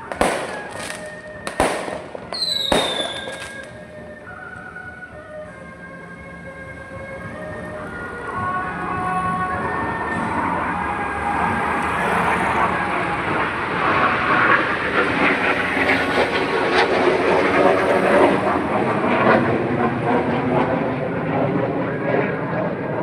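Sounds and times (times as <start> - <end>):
train rumbling: 7.2 - 19.2.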